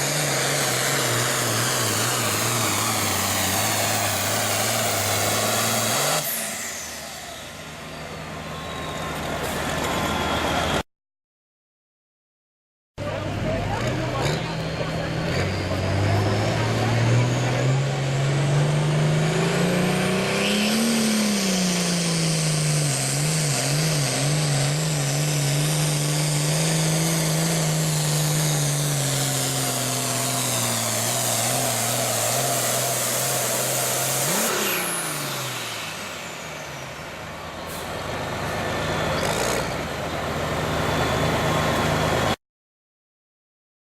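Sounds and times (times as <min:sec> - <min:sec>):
tractor diesel engine under load: 0:00.0 - 0:10.8, 0:13.0 - 0:42.4.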